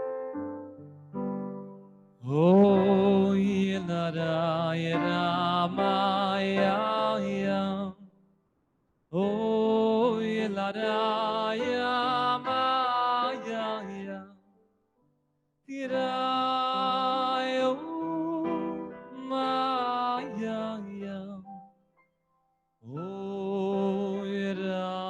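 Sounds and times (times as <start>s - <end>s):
man singing wordless melody: 2.2s - 8.2s, 9.1s - 14.5s, 15.7s - 21.6s, 22.8s - 25.0s.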